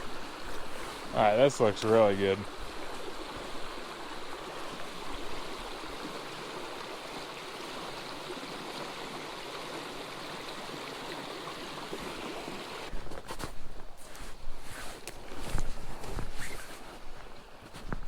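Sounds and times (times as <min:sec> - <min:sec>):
creek water babbling: 0:00.0 - 0:13.0.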